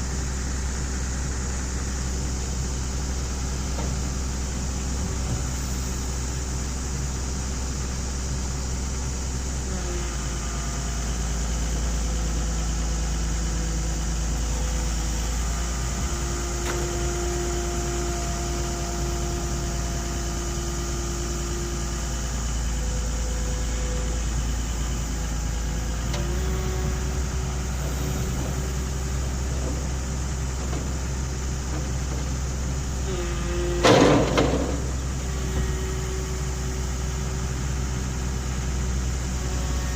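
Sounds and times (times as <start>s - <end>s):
excavator diesel engine running: 0.0s - 39.9s
hydraulic whining tones: 14.4s - 39.9s.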